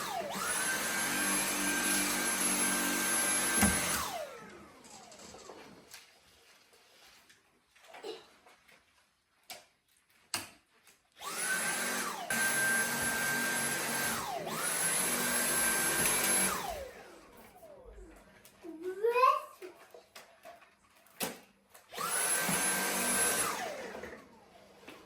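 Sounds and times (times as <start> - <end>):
vacuum cleaner motor whining: 0.0 - 5.8, 11.2 - 18.4, 21.9 - 25.0.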